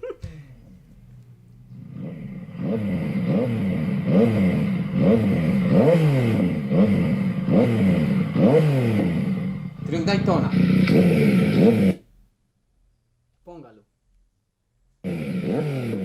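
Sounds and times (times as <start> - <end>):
motorcycle engine revving: 0.8 - 12.1, 15.0 - 16.0.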